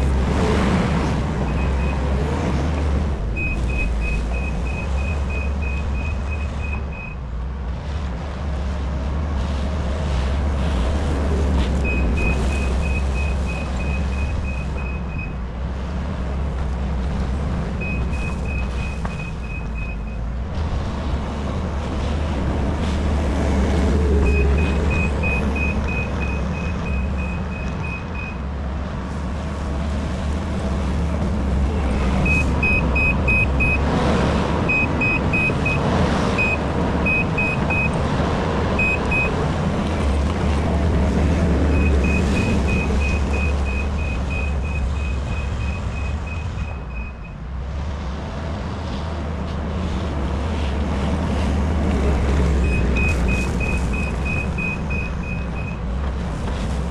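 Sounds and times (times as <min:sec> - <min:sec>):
diesel engine running: 0:00.0 - 0:56.9
reversing alarm beeping: 0:03.4 - 0:07.2, 0:11.8 - 0:15.4, 0:24.2 - 0:28.4, 0:32.2 - 0:33.9, 0:34.7 - 0:38.0, 0:38.8 - 0:39.4, 0:41.7 - 0:47.4, 0:52.6 - 0:55.8.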